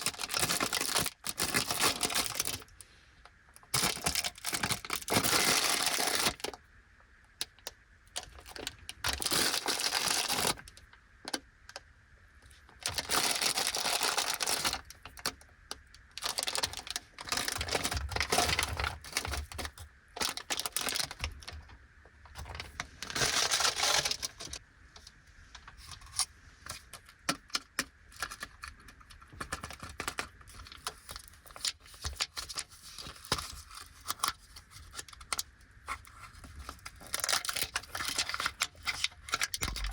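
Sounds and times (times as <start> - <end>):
snack packaging crinkling: 0.0 - 2.7, 3.7 - 6.6, 8.2 - 10.8, 12.8 - 21.6, 22.4 - 24.6, 36.6 - 39.9.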